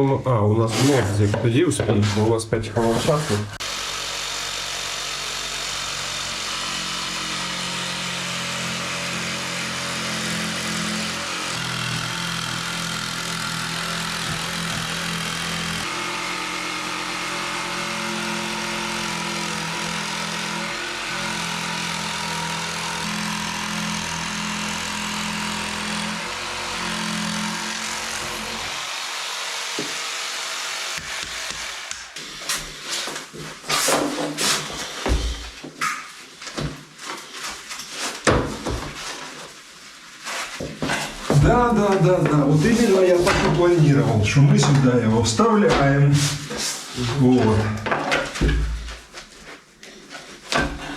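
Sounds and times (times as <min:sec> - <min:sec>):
electric jigsaw cutting: 0:03.0 - 0:36.0, 0:41.3 - 0:45.8, 0:50.4 - 0:50.9.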